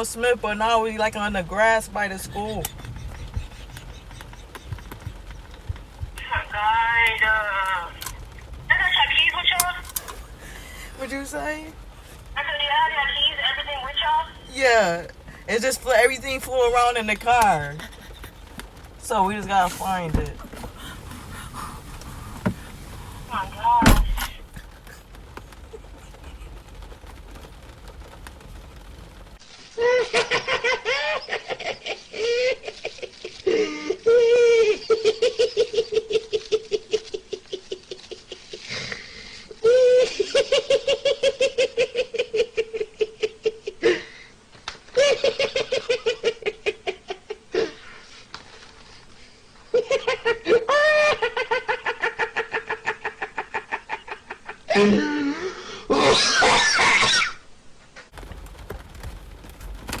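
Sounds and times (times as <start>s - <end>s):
person laughing hard: 17.7s - 18.5s.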